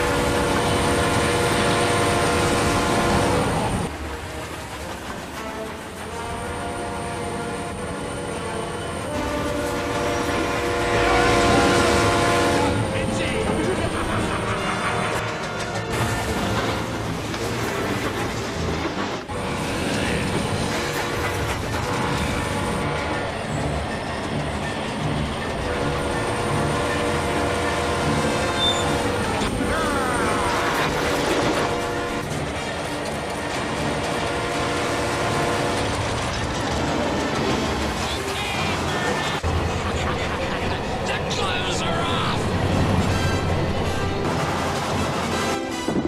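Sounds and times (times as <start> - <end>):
train running: 0.0 - 46.0
chord-like locomotive whistle: 5.4 - 16.9, 21.7 - 36.4.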